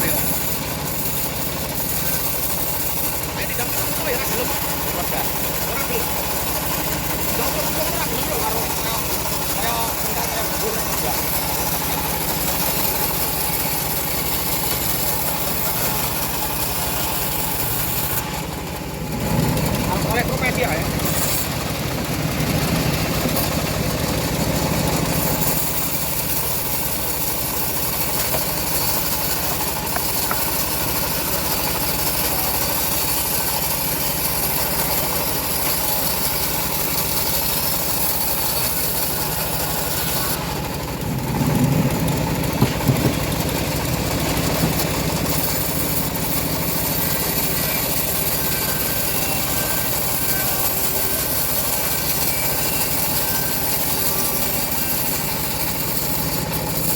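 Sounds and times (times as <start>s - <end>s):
bandsaw mill engine humming: 0.0s - 56.9s
sharp knocks: 42.6s - 43.4s.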